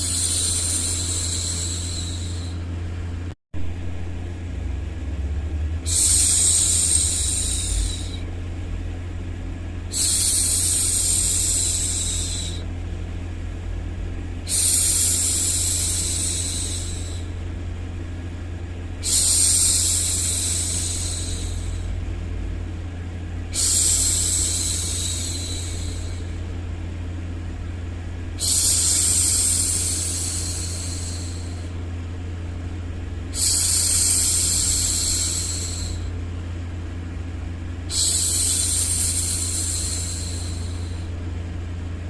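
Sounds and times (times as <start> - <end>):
woman shushing: 0.0 - 2.6, 5.9 - 8.2, 9.9 - 12.6, 28.4 - 31.7, 37.9 - 41.1
low white-noise hum: 0.0 - 42.0.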